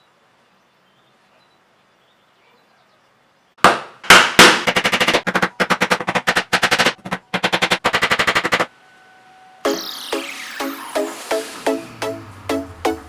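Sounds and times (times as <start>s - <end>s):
fast run of pulses: 9.7s - 13.0s
sharp pitched hits: 9.7s - 13.0s.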